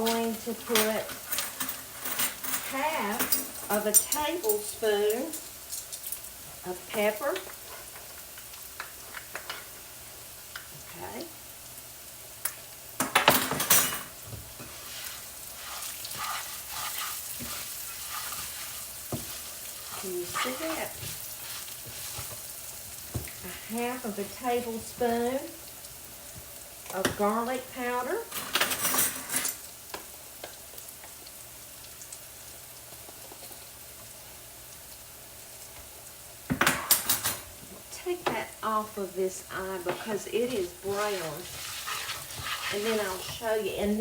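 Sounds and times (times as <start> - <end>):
rice sizzling in oil: 0.0 - 44.0
spoon scraping a pan: 13.1 - 22.6, 39.5 - 44.0.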